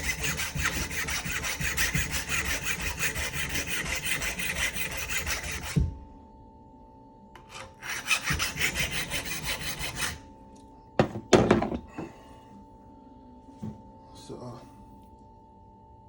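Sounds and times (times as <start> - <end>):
sharpener rasping on blade: 0.0 - 5.8, 7.4 - 10.2.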